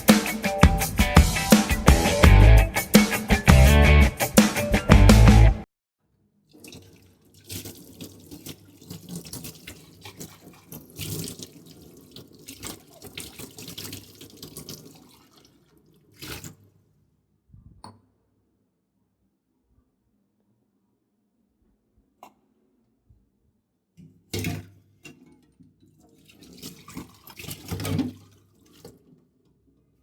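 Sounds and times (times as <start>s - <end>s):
tap water running into sink: 6.5s - 16.7s.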